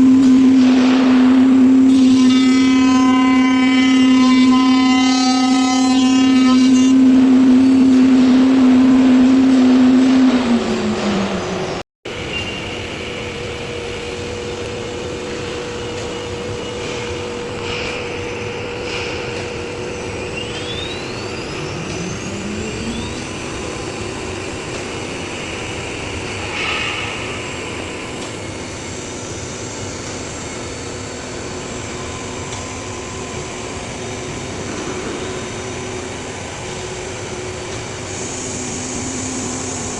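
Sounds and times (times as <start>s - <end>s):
machine spindle humming: 0.0s - 39.9s
mechanical drone: 0.0s - 39.9s
short rising whines: 0.0s - 39.9s.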